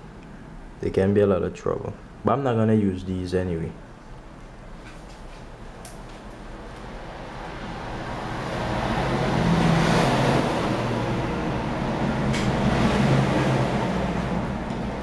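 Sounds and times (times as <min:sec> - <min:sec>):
motor vehicle rushing hum: 0:06.4 - 0:15.0.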